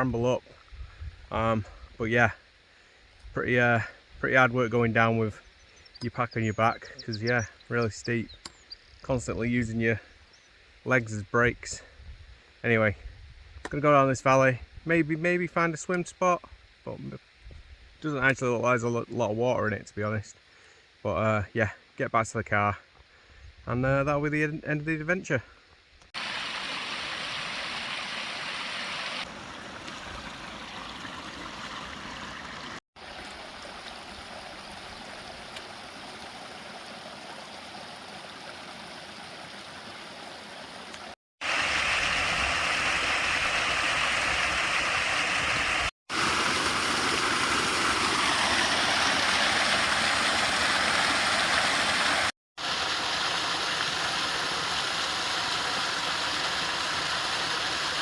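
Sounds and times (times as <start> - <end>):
stream running over rocks: 26.2 - 58.0.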